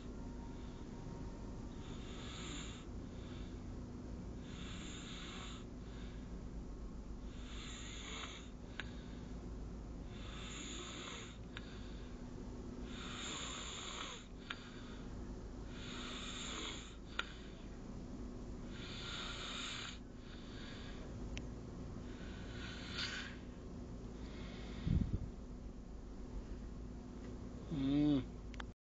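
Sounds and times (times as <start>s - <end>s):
person snoring: 1.8s - 3.5s, 4.4s - 5.7s, 7.3s - 8.5s, 10.1s - 11.4s, 12.9s - 14.3s, 15.7s - 17.5s, 18.7s - 21.0s, 22.2s - 23.4s, 27.6s - 28.3s.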